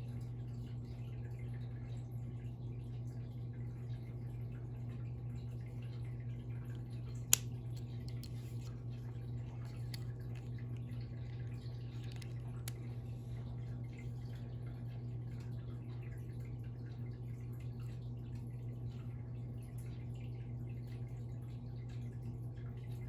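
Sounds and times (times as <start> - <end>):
steady low hum: 0.0 - 18.8
packaging clicks: 7.3 - 8.7, 11.8 - 12.9.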